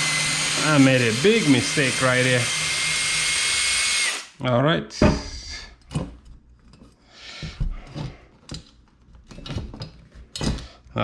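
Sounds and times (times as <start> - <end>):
tools being handled and set down: 5.0 - 10.8.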